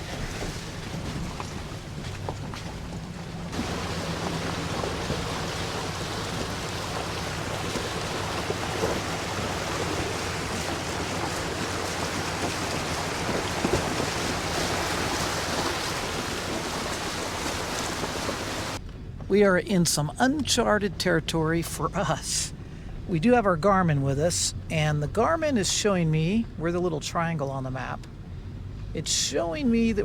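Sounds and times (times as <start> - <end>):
tires rolling over gravel: 0.0 - 30.0.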